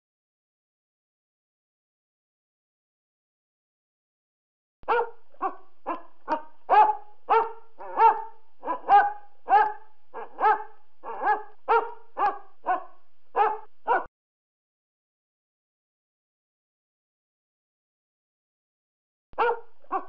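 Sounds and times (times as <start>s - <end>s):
large dog barking: 4.8s - 14.1s, 19.4s - 20.0s.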